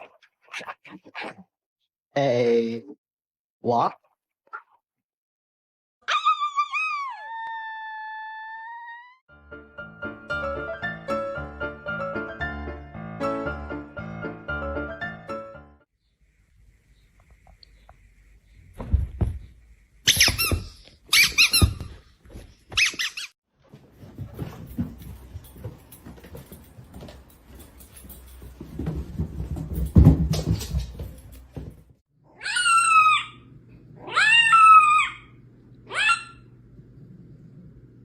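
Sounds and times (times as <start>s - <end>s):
rustling and bumping: 18.6s - 20.8s, 23.6s - 32.0s
short high-pitched squeaks: 20.1s - 21.9s, 22.7s - 23.4s.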